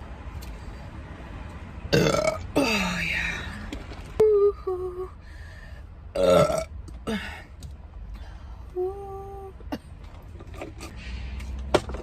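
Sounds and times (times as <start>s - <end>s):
woman burping: 1.9s - 2.8s, 6.2s - 7.2s.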